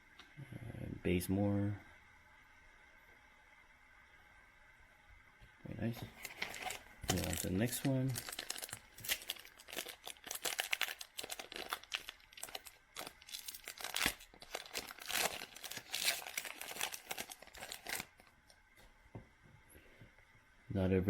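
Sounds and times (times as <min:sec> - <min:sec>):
wrapper torn open and crinkled: 0:06.1 - 0:18.3.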